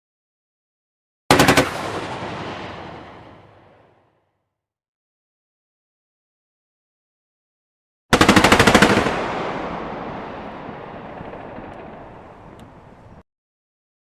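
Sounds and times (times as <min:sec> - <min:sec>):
machine gun burst: 0:01.3 - 0:02.4, 0:08.1 - 0:09.6
gunfire echo: 0:01.3 - 0:04.1, 0:08.1 - 0:13.2.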